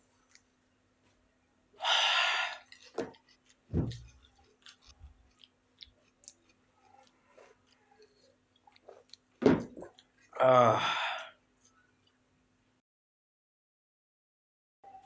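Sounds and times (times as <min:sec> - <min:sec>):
chewing with wet mouth clicks: 0:02.6 - 0:09.3
low thumps: 0:03.7 - 0:04.2.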